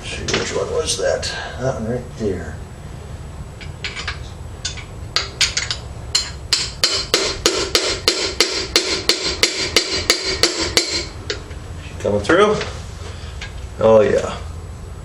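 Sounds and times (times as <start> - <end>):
hammer blows on metal: 5.2 - 11.5.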